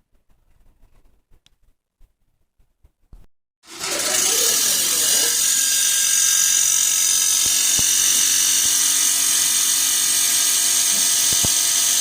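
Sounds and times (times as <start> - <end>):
convection fan whirring: 3.7 - 12.0.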